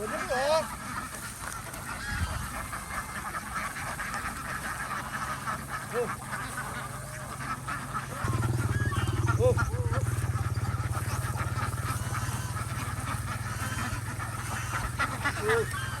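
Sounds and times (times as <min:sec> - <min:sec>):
ducks quacking: 0:00.0 - 0:16.0
low hum: 0:08.1 - 0:16.0.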